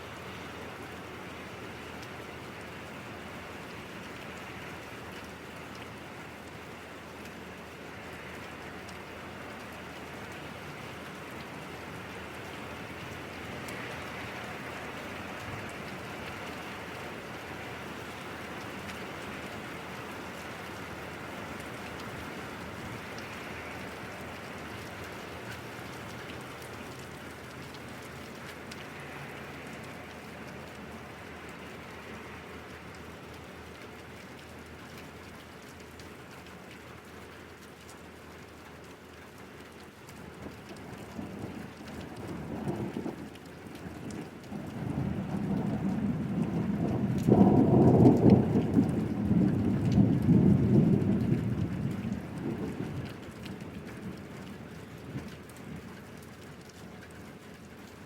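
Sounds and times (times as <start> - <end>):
steady rain: 0.0 - 58.0
thunder rumbling: 43.9 - 54.4.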